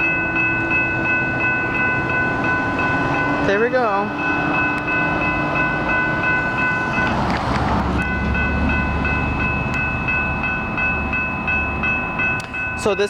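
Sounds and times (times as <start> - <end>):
railroad crossing bell ringing: 0.0 - 13.0
rushing noise of passing train: 0.0 - 13.0
train rumbling: 0.0 - 13.0.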